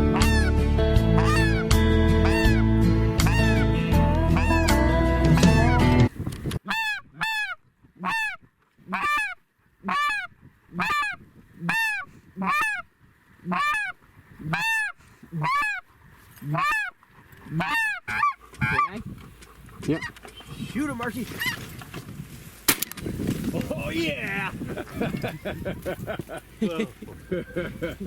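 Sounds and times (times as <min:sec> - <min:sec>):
snow goose honks: 0:00.0 - 0:06.0, 0:06.6 - 0:15.8, 0:16.4 - 0:19.0.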